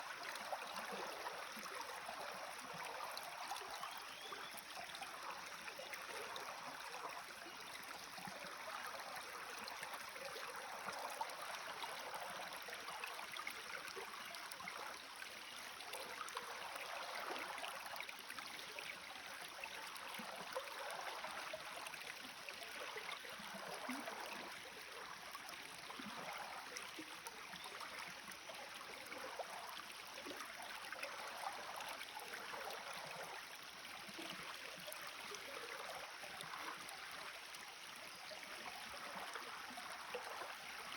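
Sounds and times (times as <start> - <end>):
forest stream bubbling: 0.0 - 40.9.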